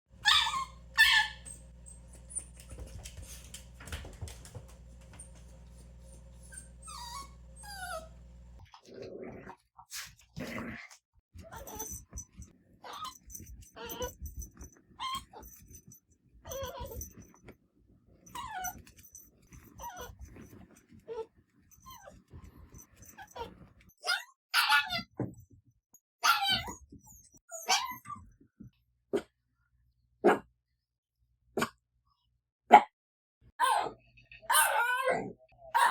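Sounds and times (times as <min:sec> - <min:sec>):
dog whining: 0:00.2 - 0:04.4, 0:05.1 - 0:08.3, 0:11.4 - 0:15.8, 0:16.5 - 0:17.2, 0:18.3 - 0:25.0
steady low hum: 0:00.2 - 0:08.6.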